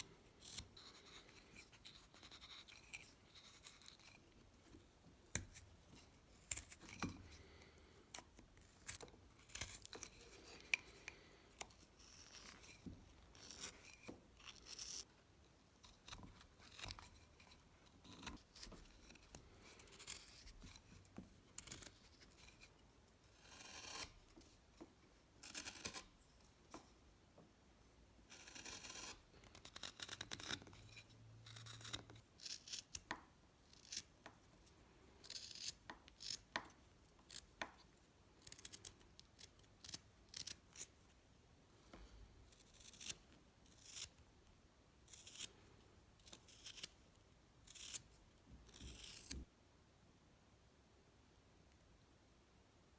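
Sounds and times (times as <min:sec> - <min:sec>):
knife scraping wood: 0:00.0 - 0:15.1, 0:15.8 - 0:22.7, 0:23.3 - 0:24.5, 0:25.4 - 0:26.2, 0:28.3 - 0:34.1, 0:35.2 - 0:36.6, 0:38.4 - 0:41.0, 0:41.9 - 0:44.2, 0:45.1 - 0:47.0, 0:47.7 - 0:48.1, 0:48.7 - 0:49.4
knife shaving wood strokes: 0:00.1 - 0:04.5, 0:05.3 - 0:15.1, 0:15.8 - 0:21.0, 0:23.4 - 0:24.2, 0:25.4 - 0:26.1, 0:28.3 - 0:33.1.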